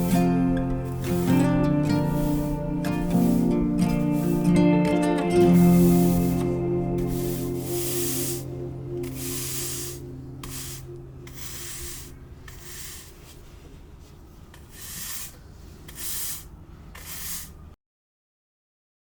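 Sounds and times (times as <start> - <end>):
quiet background music: 0.0 - 13.3
short scraping and rubbing: 0.0 - 17.7.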